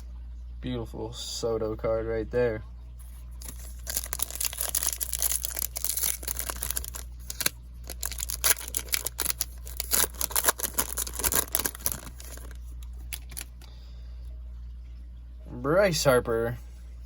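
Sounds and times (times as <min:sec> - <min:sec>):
foil wrapper tearing and crinkling: 0:03.4 - 0:13.7.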